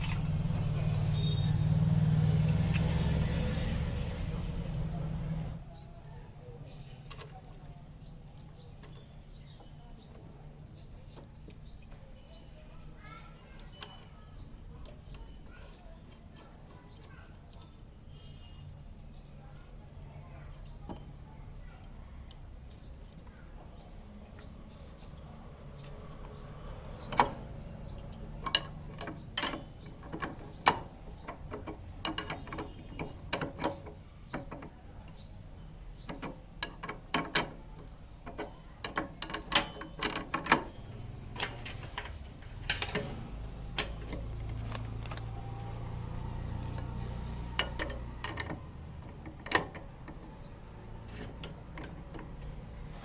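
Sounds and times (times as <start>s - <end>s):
bird chirping: 0.0s - 1.7s, 42.6s - 48.4s, 50.1s - 53.0s
metallic clicks of hand tools: 46.5s - 52.4s.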